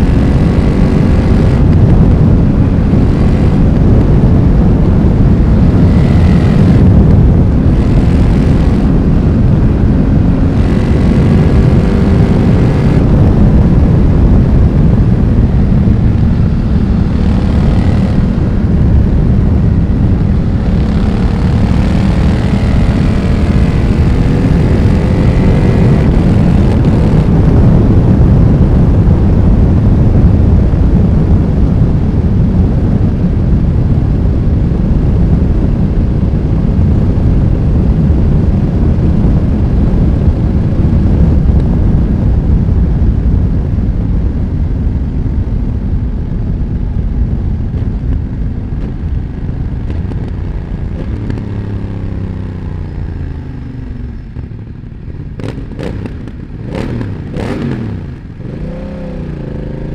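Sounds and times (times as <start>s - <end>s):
motorcycle engine at speed: 0.0s - 59.9s
wind rush: 0.0s - 59.9s
exhaust pops: 47.6s - 51.8s.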